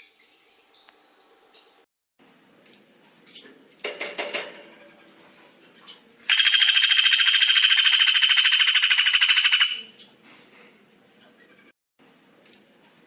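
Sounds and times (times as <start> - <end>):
songbird rattling trill: 6.3 - 9.9.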